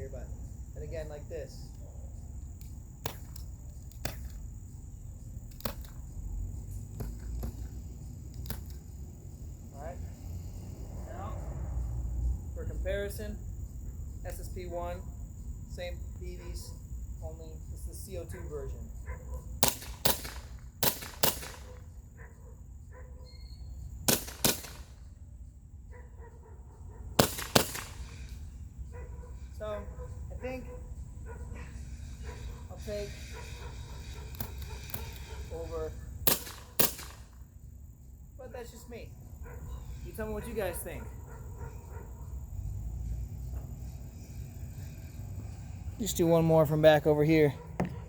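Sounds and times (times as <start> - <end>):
airsoft pistol firing snaps: 2.6 - 4.4, 19.6 - 21.7, 24.1 - 25.0, 27.2 - 28.2, 36.3 - 37.4.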